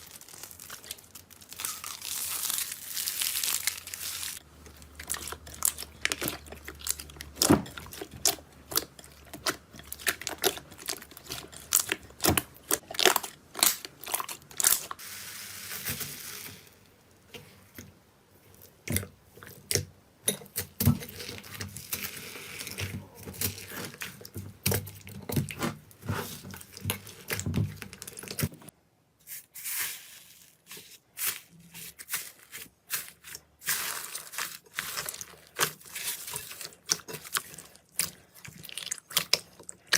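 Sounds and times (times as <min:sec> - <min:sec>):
slime crackling and popping: 0:00.0 - 0:15.0.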